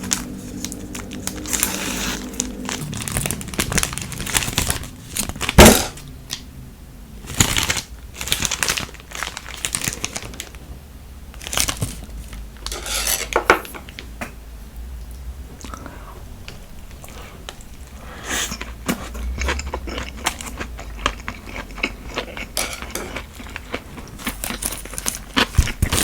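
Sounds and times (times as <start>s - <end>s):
plastic containers and cutlery clattering: 2.8s - 6.0s, 12.6s - 14.0s.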